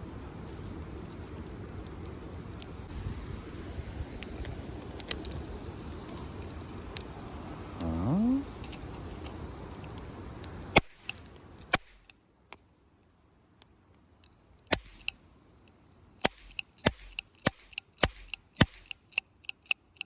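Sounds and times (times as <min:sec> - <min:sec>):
steady hiss: 0:00.0 - 0:19.1
loud snap: 0:10.8 - 0:12.1, 0:14.7 - 0:15.1, 0:16.2 - 0:19.0
sharp clicks: 0:14.7 - 0:15.2, 0:16.2 - 0:20.0.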